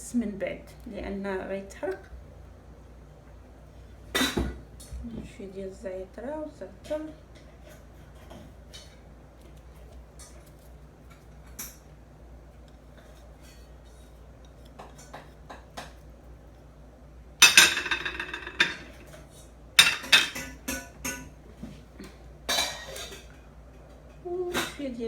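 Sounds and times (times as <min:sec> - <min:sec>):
dishes and utensils clattering: 0:17.4 - 0:19.2, 0:19.8 - 0:21.4, 0:22.5 - 0:23.4.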